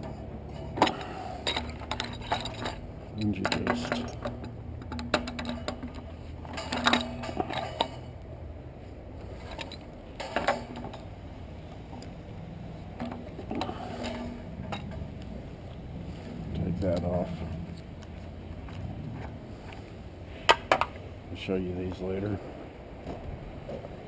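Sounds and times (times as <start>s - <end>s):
metal clinks and knocks: 0.0s - 8.2s, 9.2s - 11.2s, 11.8s - 19.4s
steady low hum: 0.0s - 24.0s.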